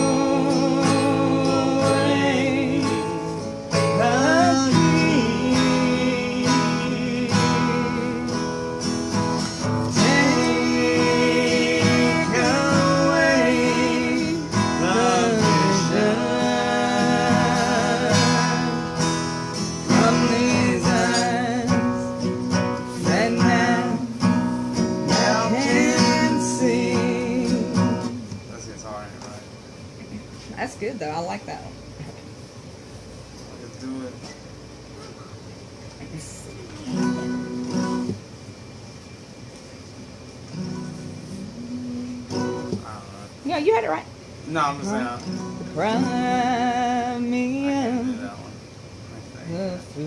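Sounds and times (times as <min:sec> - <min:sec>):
person singing with vibrato: 0:00.0 - 0:08.6, 0:09.9 - 0:28.4, 0:41.0 - 0:42.7, 0:44.8 - 0:48.5
acoustic guitar strumming: 0:00.0 - 0:31.6, 0:36.4 - 0:50.0.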